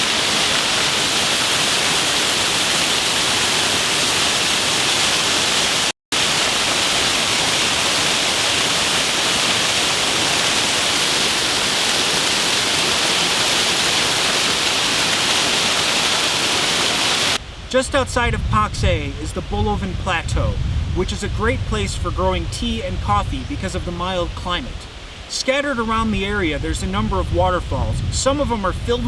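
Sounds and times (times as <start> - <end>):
waterfall roaring: 0.0 - 20.2.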